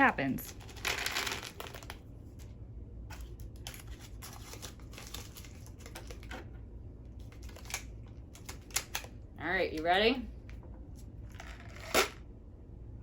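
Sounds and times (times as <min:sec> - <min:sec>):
cardboard handling crinkle: 0:03.1 - 0:06.3.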